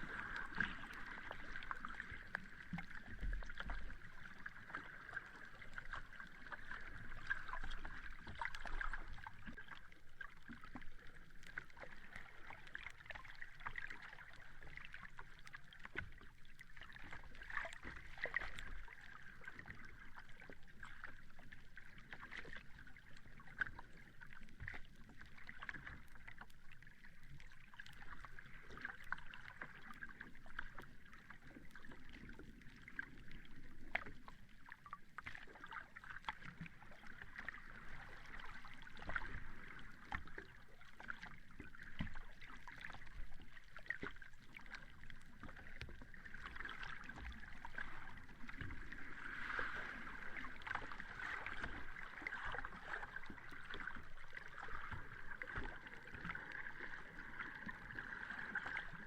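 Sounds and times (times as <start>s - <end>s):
sea water washing on beach: 0.0s - 9.6s, 44.7s - 59.0s.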